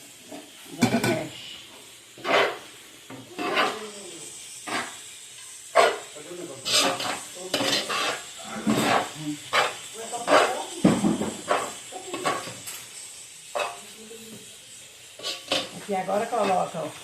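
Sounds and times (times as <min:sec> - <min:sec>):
hot oil sizzling: 0:00.0 - 0:17.0
spoon scraping a bowl: 0:02.2 - 0:02.6, 0:03.3 - 0:03.8, 0:05.8 - 0:10.6, 0:15.2 - 0:15.8.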